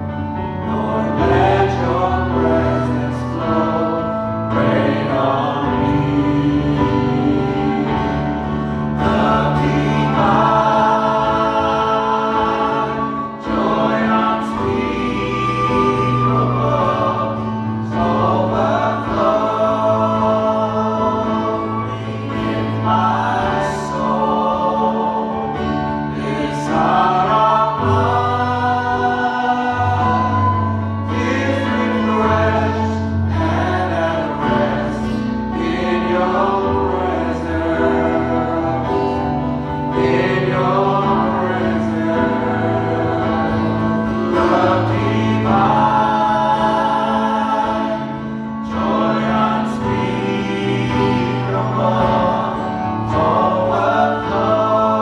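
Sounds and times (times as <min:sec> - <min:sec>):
bass and instruments: 0:00.0 - 0:55.0
group singing gospel song: 0:00.0 - 0:55.0.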